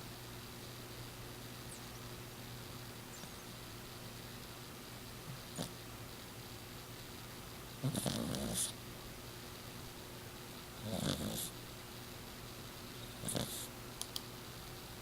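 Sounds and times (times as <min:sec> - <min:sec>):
cat snoring: 0:07.8 - 0:08.7, 0:10.8 - 0:11.5, 0:13.2 - 0:13.7.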